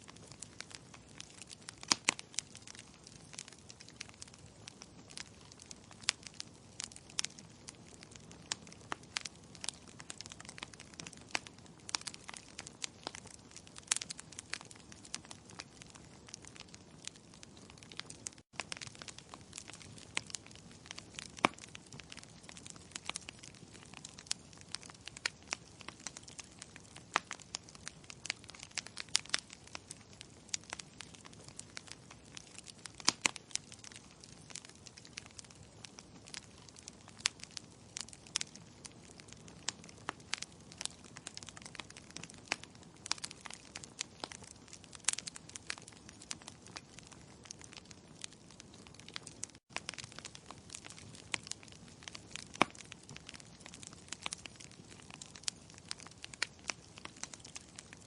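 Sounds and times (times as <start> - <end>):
fire crackling and popping: 0.0 - 58.0.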